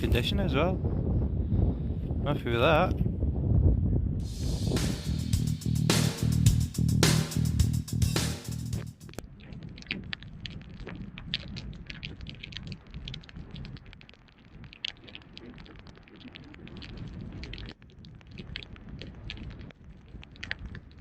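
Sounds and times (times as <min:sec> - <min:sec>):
low rumble: 0:03.1 - 0:13.8
irregular crackles: 0:04.3 - 0:21.0.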